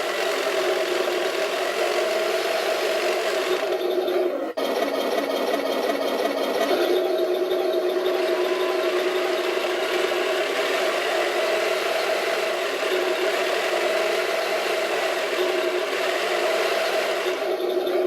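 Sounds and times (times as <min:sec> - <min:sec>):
rattly engine sound effect from speaker: 0:00.0 - 0:18.0.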